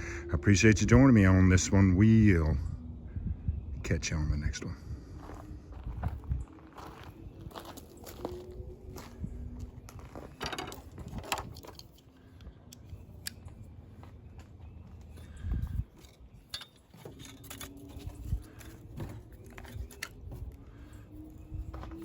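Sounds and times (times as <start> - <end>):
faint steady drone: 0.0 - 22.0
clicks and rustles of handling: 10.0 - 15.2, 15.9 - 21.2.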